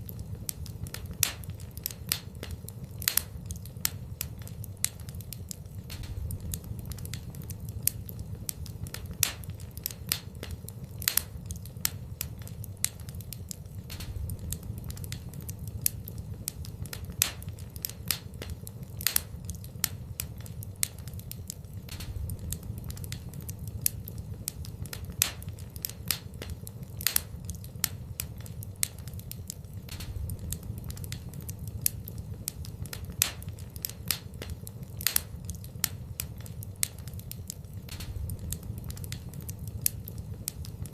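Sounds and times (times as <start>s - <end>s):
low rumble: 0.0s - 18.5s, 21.7s - 26.5s, 29.8s - 34.5s, 37.8s - 40.9s
fire crackling in fireplace: 0.0s - 40.9s.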